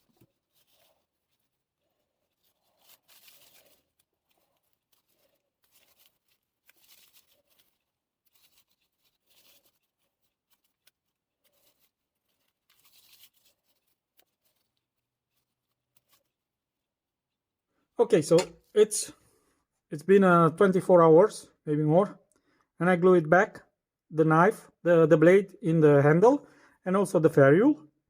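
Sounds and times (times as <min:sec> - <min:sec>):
hands rustling and scraping materials: 0:00.0 - 0:18.7.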